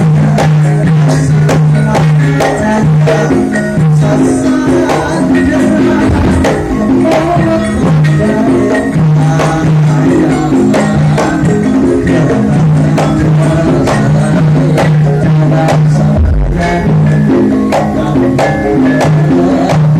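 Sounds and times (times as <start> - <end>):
steady percussion beat: 0.0 - 19.9
sustained low melodic notes: 5.0 - 10.5.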